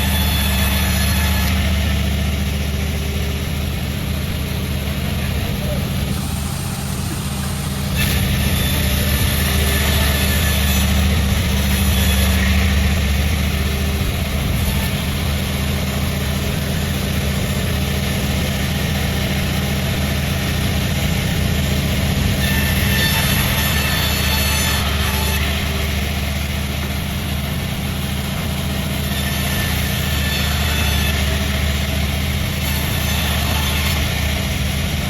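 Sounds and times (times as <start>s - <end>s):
sawmill engine hum: 0.0s - 35.0s
broad hiss: 1.6s - 22.0s.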